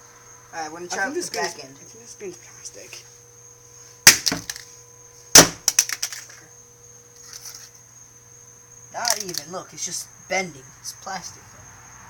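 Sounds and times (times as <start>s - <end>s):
clatter of small knocks: 4.1s - 4.7s, 5.6s - 6.4s.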